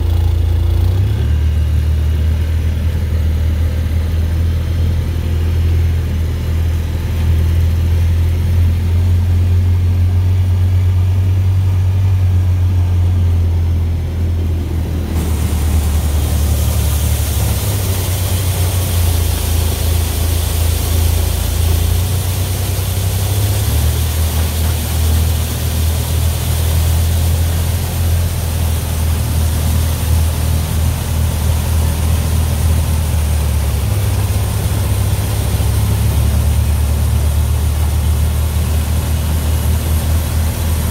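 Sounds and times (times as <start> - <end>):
tractor engine running: 0.0 - 40.9
machinery hiss: 14.1 - 40.9.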